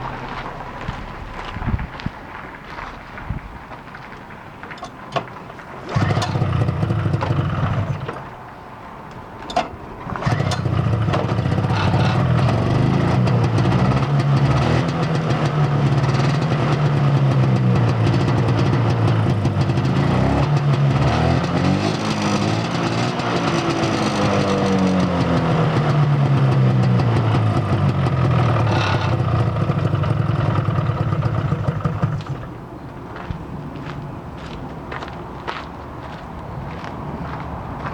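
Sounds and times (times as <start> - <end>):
snowmobile engine revving: 10.2 - 30.8.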